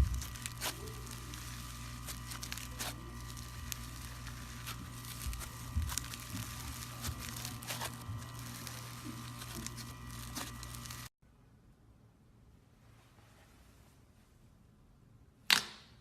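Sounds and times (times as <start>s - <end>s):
slime crackling and popping: 0.0s - 11.1s
background hum: 0.0s - 15.4s.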